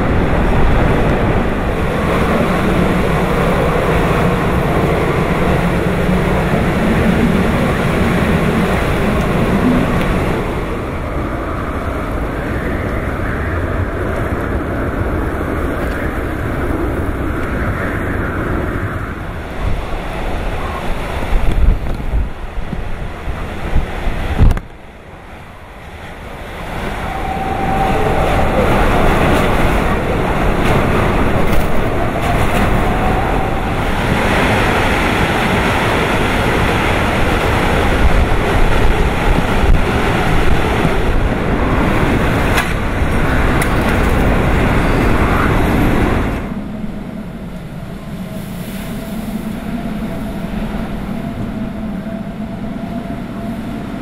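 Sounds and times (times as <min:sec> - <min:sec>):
heavy surf: 0:00.0 - 0:54.0
wind buffeting microphone: 0:00.0 - 0:54.0.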